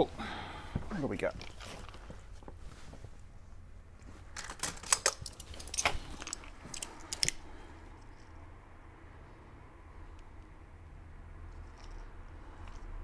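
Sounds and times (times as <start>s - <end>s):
metal drill bits clinking: 4.4s - 7.4s.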